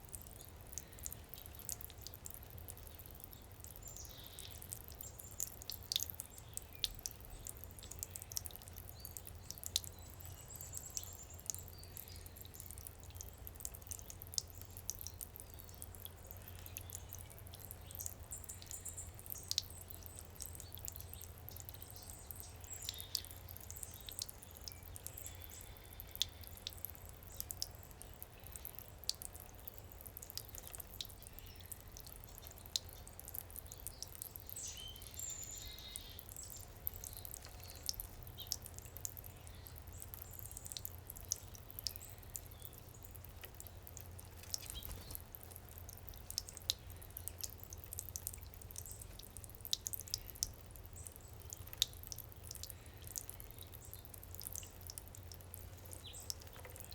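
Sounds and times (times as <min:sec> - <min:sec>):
fountain water dripping and splashing: 0:00.0 - 0:56.9.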